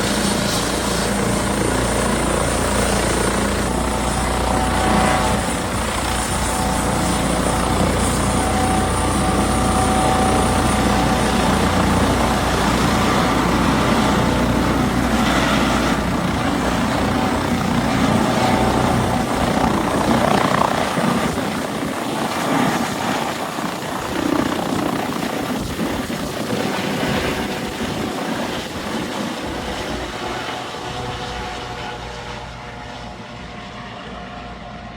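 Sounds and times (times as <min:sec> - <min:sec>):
helicopter in flight: 0:00.0 - 0:34.9.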